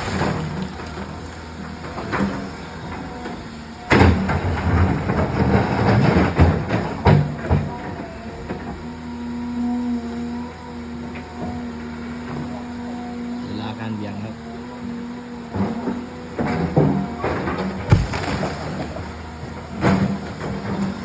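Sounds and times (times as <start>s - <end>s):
excavator engine and hydraulics: 0.0s - 21.0s
metal crashing on rock: 17.8s - 19.0s.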